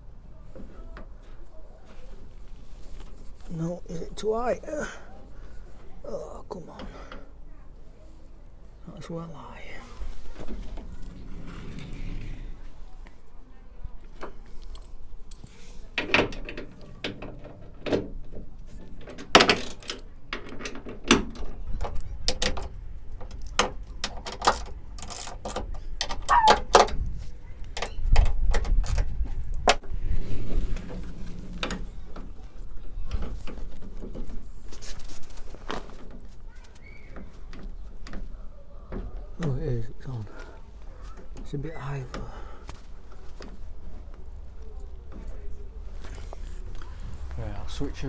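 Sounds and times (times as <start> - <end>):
sliding door clicks and rattles: 10.2 - 12.6, 15.8 - 34.5
door squeak: 26.1 - 27.0.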